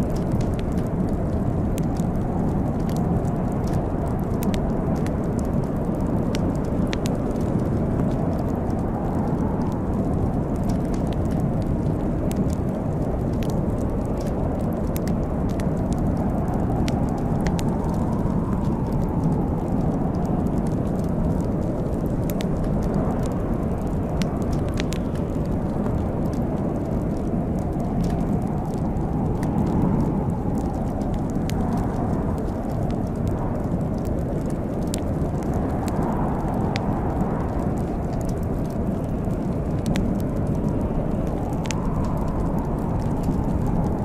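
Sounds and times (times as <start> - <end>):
fire crackling and popping: 0.0 - 44.0.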